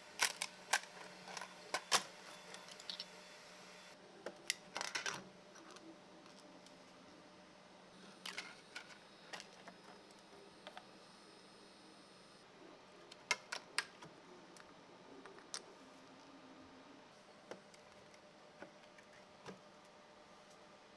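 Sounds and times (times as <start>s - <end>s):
faint steady hum: 0.0s - 20.9s
plastic parts clicking: 13.1s - 14.7s.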